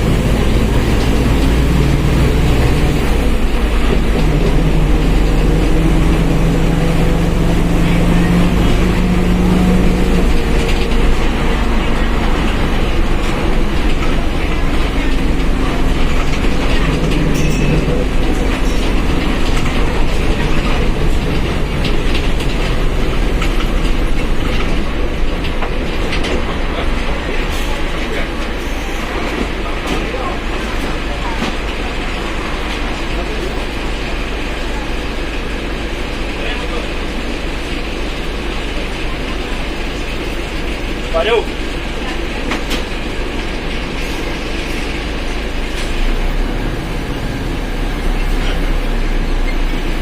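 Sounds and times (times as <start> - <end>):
bus body rattling: 0.0 - 50.0
bus diesel rumble: 0.0 - 50.0.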